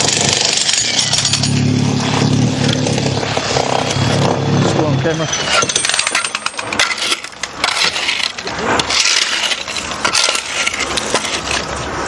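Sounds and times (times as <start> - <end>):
broken pieces clattering: 0.0 - 2.0, 5.2 - 11.7
concrete and brick breaking: 0.0 - 4.3, 5.1 - 11.7.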